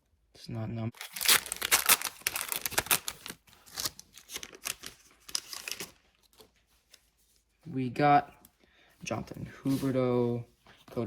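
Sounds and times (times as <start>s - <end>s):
foil wrapper crinkling and tearing: 1.0s - 6.0s.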